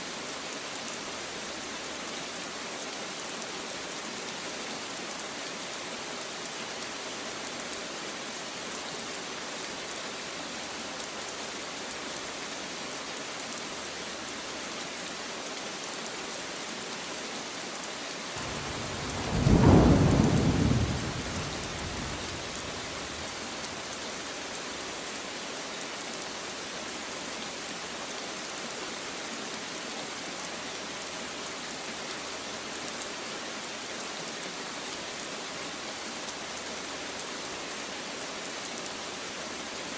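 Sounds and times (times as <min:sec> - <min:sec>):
steady rain falling: 0:00.0 - 0:39.9
thunderclap rumbling: 0:18.4 - 0:23.6.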